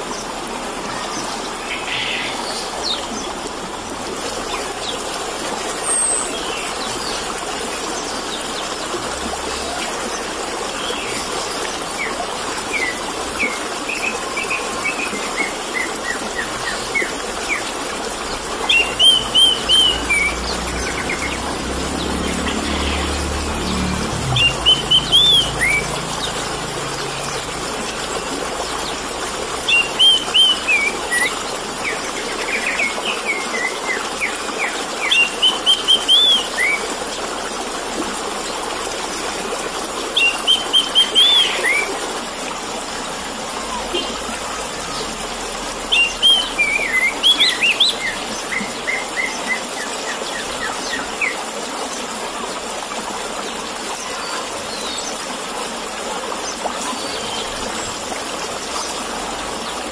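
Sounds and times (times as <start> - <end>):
babbling running water: 0.0 - 59.9
thrush singing whistled phrases: 18.7 - 21.3, 24.3 - 26.4.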